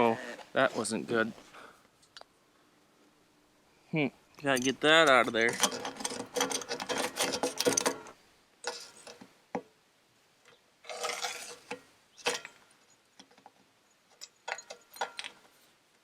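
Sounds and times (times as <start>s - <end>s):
metal piece rattling in tube: 4.5s - 9.2s.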